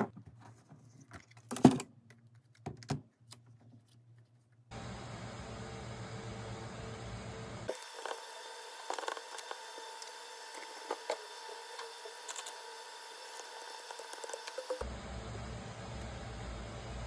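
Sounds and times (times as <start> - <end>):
small clicks and scrapes: 0.2 - 4.7, 7.7 - 14.8
low background hum: 3.8 - 17.0
faint steady whine: 4.7 - 17.0.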